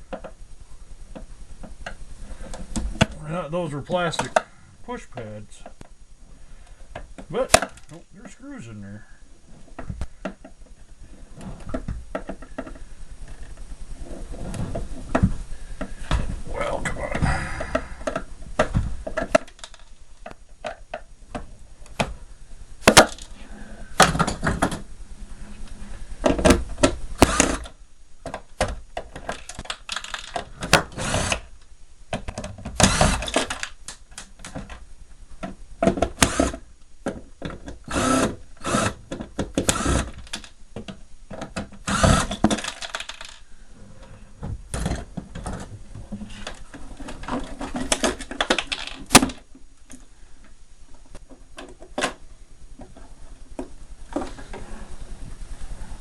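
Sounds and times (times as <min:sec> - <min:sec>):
hand tools and plastic parts rattling: 0:17.7 - 0:21.4, 0:26.2 - 0:31.5, 0:32.1 - 0:34.8, 0:35.4 - 0:50.1.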